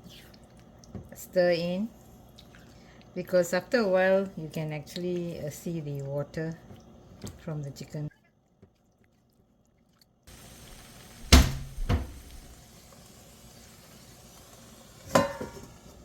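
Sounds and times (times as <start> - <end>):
faint steady hiss: 10.3 - 16.0
heavy knocks: 11.2 - 12.5.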